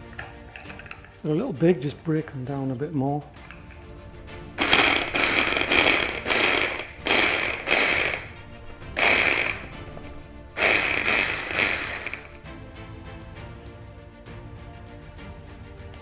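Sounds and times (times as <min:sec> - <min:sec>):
small blender chopping: 0:04.2 - 0:12.4.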